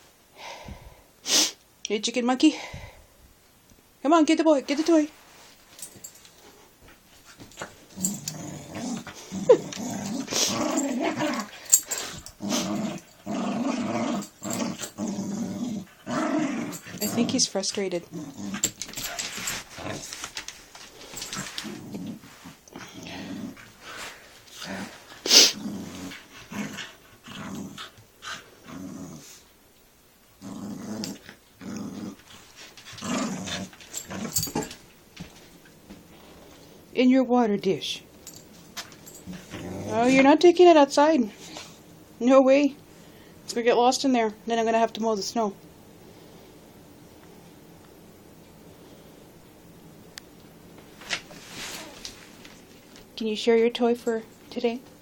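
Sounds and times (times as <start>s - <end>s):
dog growling: 7.9s - 17.4s, 18.0s - 20.1s, 21.1s - 29.4s, 30.3s - 34.8s, 39.2s - 40.2s.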